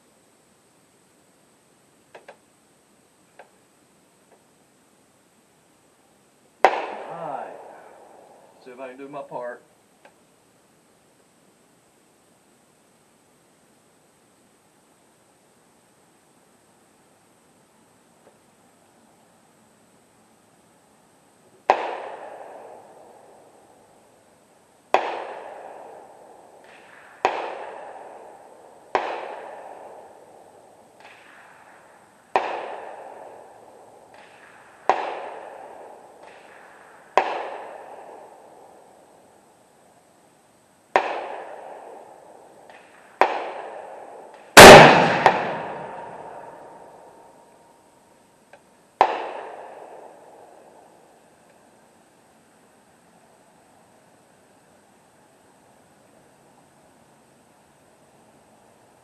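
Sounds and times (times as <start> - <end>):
rifle shots with echo: 6.6 - 8.3, 21.7 - 23.1, 24.9 - 30.2, 31.0 - 38.4, 40.9 - 42.1, 42.7 - 47.0, 49.0 - 50.4.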